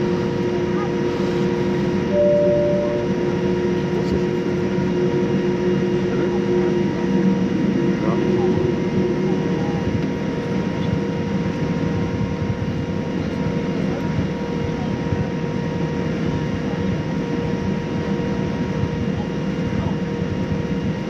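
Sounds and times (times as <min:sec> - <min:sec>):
airliner cabin rumble: 0:00.0 - 0:21.0
faint hums: 0:00.8 - 0:13.4.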